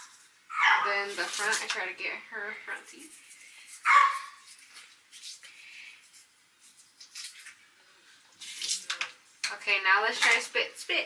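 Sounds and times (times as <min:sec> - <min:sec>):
toothbrush scrubbing teeth: 0:02.7 - 0:07.6.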